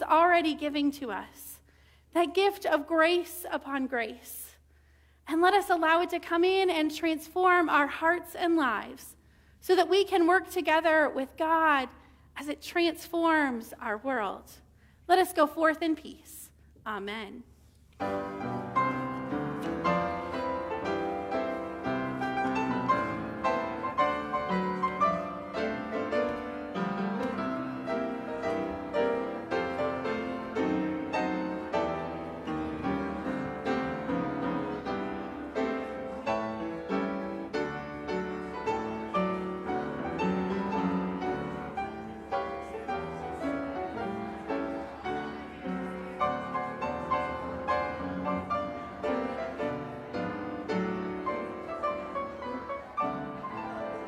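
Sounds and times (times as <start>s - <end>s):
piano playing chords: 18.0s - 54.0s.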